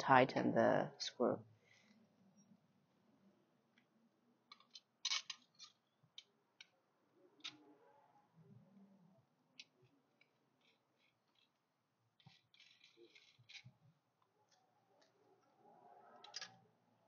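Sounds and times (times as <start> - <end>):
metal parts clicking and rattling: 4.5 - 6.7, 12.2 - 13.8.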